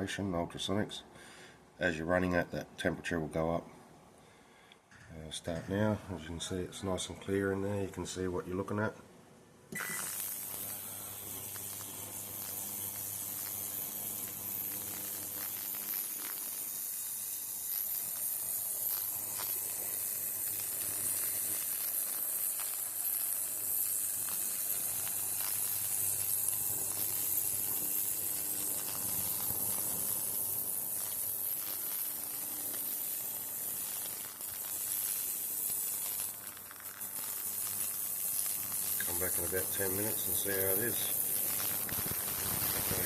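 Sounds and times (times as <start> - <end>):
ultrasonic cleaner high hiss: 9.7 - 43.0.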